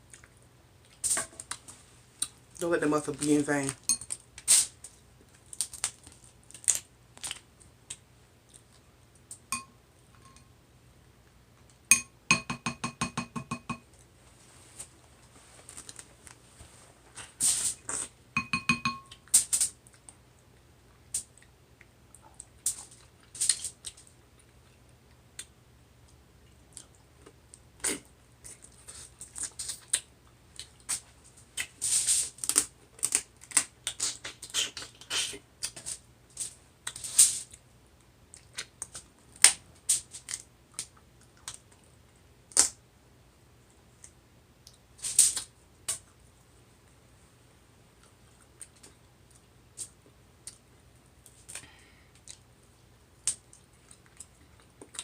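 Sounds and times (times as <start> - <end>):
chewing and lip smacks: 53.3 - 55.0.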